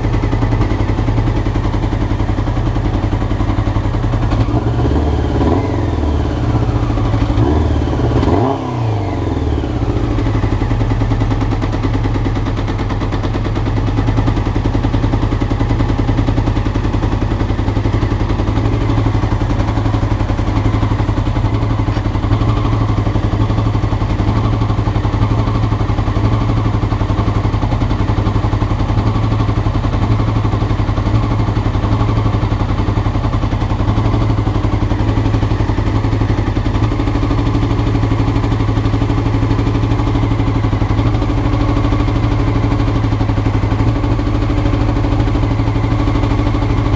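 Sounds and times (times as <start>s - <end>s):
motorcycle engine revving and idling: 0.0s - 46.9s.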